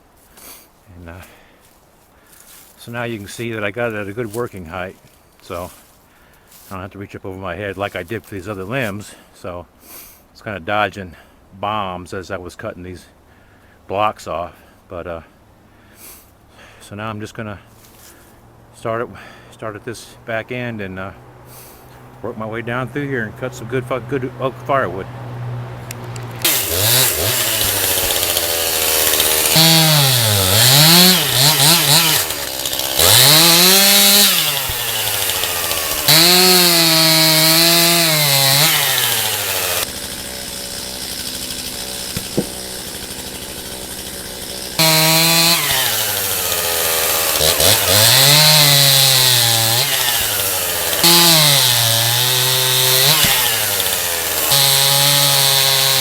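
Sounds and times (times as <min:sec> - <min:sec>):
chainsaw cutting log: 0:25.8 - 0:56.0.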